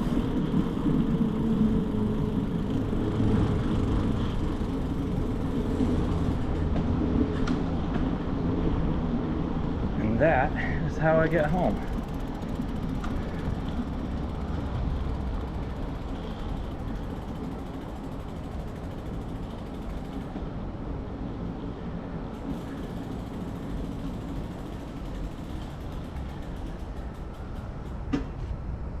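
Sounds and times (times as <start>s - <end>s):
bike freewheel ratchet ticking: 0.0s - 6.8s, 11.0s - 20.4s, 22.4s - 28.1s
tyre and wind rumble: 0.0s - 29.0s.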